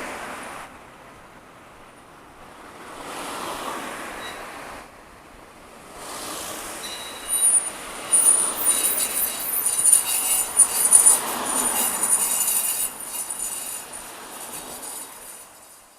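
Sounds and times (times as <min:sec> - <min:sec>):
high-pitched metallic squeal: 0:06.6 - 0:15.9.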